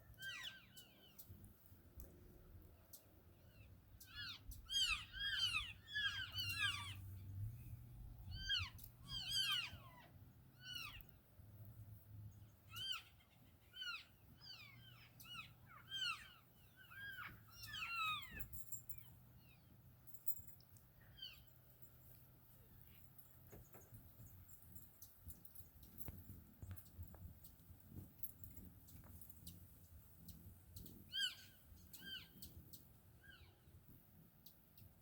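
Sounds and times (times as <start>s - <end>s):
animal squeaky calls: 0.1s - 1.2s, 4.0s - 7.1s, 8.2s - 11.1s, 12.7s - 19.1s, 31.1s - 32.4s.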